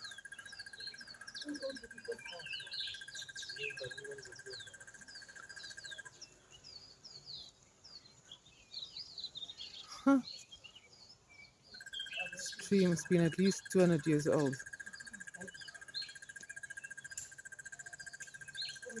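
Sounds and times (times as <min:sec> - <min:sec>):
birds chirping: 0:00.0 - 0:19.0.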